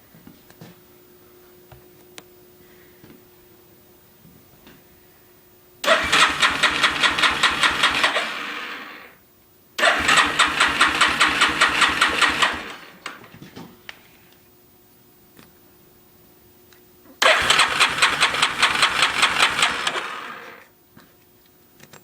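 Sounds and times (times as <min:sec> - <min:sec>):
engine starter chugging: 0:05.8 - 0:09.1, 0:09.8 - 0:13.2, 0:17.2 - 0:20.7.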